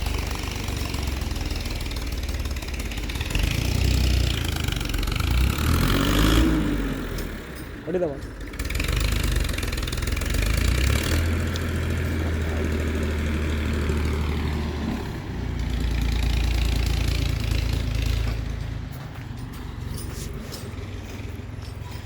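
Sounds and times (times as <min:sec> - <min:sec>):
heavy diesel engine running: 0:00.0 - 0:22.0.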